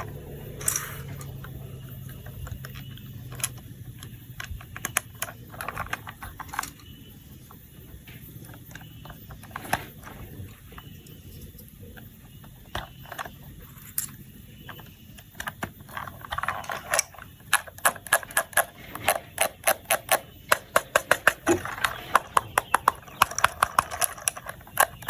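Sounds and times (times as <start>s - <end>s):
plastic toy parts clicking: 15.2s - 25.0s.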